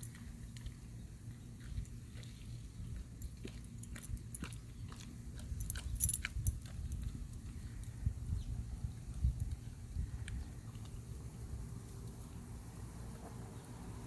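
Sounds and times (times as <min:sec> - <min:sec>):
dog chewing and licking: 0:01.6 - 0:07.7.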